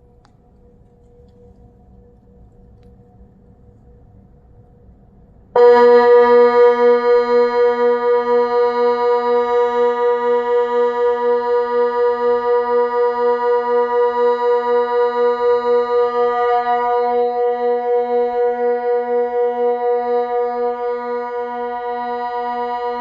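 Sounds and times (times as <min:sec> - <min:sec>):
electronic siren throbbing: 0:05.6 - 0:23.0.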